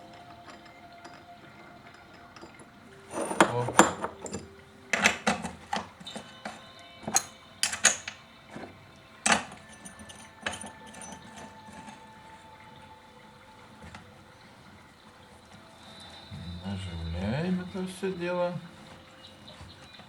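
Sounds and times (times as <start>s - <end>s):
small metal parts clinking: 0.0s - 12.5s.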